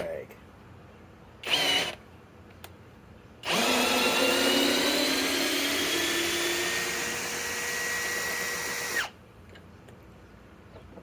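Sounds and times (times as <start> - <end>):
cordless drill motor whine: 1.4 - 2.0, 3.4 - 9.2.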